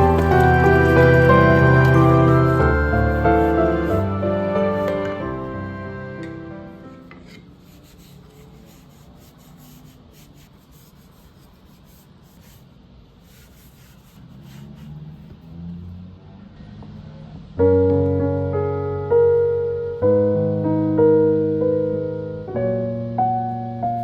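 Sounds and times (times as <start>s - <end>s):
wooden utensils being scrubbed: 0.0s - 5.4s
soft background music: 0.0s - 7.4s, 17.6s - 24.0s.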